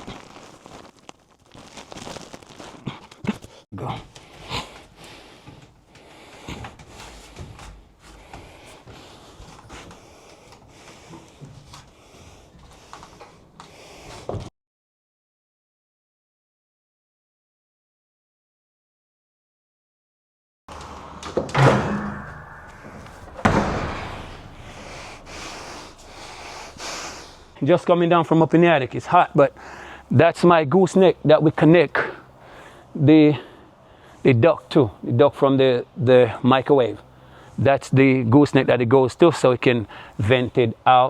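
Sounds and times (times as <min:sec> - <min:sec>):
attic hatch banging shut: 0:21.2 - 0:26.0.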